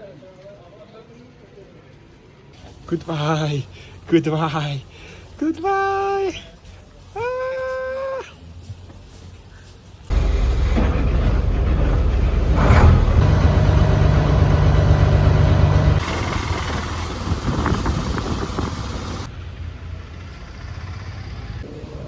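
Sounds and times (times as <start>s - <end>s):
road noise: 2.6s - 7.4s, 8.0s - 22.0s
vehicle engine running: 10.1s - 21.8s.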